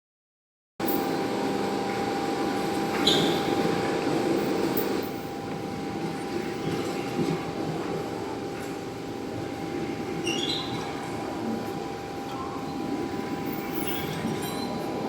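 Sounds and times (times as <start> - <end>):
forklift engine running with whine: 0.8 - 7.1.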